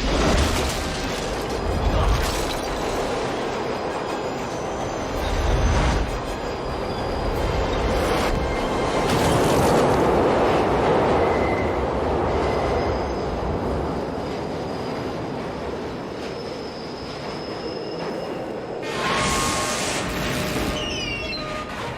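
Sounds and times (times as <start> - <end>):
subway train rumbling past: 1.2 - 21.9
faint high wheel squeal: 11.2 - 13.7, 14.4 - 21.9.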